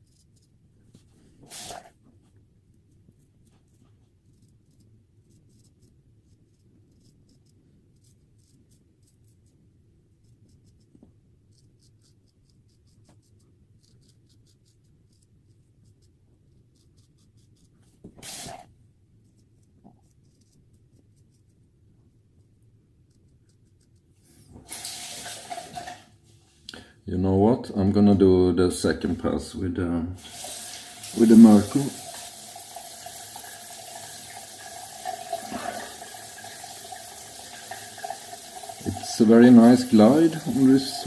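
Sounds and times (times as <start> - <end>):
razor scraping stubble: 11.5 - 18.7.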